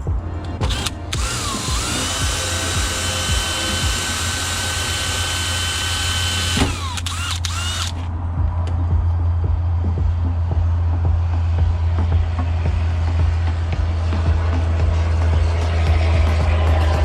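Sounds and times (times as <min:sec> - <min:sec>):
power drill whining: 0:00.6 - 0:08.1.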